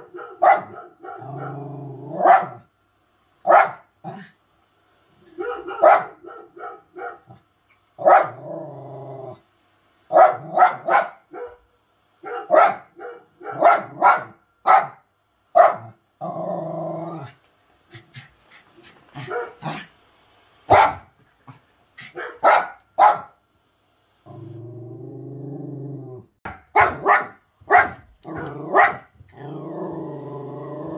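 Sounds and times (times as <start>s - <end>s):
dog barking: 0.0s - 2.7s, 3.4s - 3.9s, 5.3s - 7.4s, 8.0s - 8.4s, 10.1s - 16.0s, 19.2s - 19.8s, 20.7s - 21.1s, 22.0s - 23.4s, 26.4s - 29.1s
dog growling: 1.2s - 2.3s, 8.4s - 9.4s, 16.2s - 18.3s, 24.3s - 26.3s, 28.2s - 30.9s.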